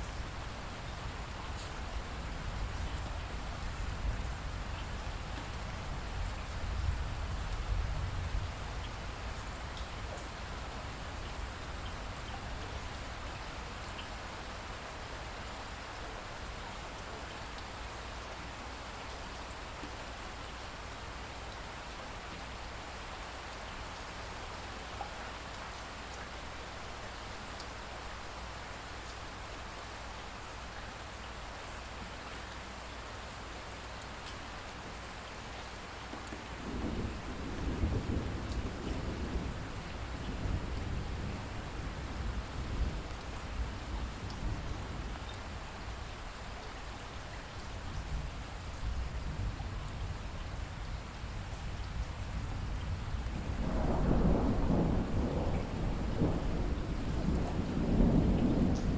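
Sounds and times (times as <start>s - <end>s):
rainfall hiss: 0.0s - 58.9s
low thunder rumble: 36.6s - 45.2s, 51.8s - 58.9s.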